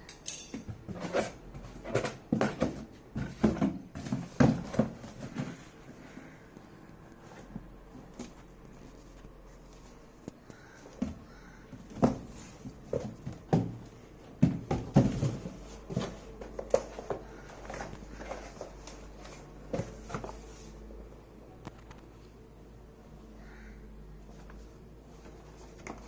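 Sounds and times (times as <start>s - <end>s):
cardboard box knocks and rustles: 0.7s - 5.7s, 10.9s - 18.6s.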